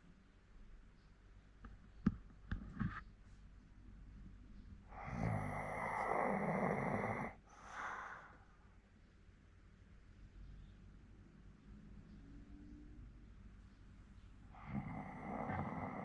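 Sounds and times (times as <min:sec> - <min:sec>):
dog snoring: 0:04.9 - 0:07.4, 0:14.5 - 0:16.0.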